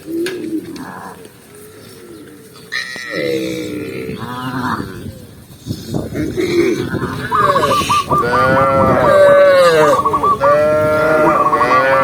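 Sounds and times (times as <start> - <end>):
cattle calling: 2.6 - 4.9, 5.9 - 12.0.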